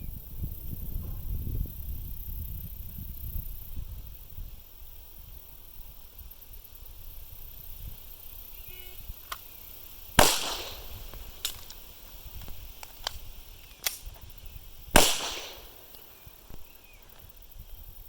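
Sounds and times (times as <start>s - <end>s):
pistol reload clicks and clacks: 10.2s - 11.8s, 12.4s - 14.1s, 15.0s - 16.1s
pistol shots: 10.2s - 11.9s, 15.0s - 16.7s.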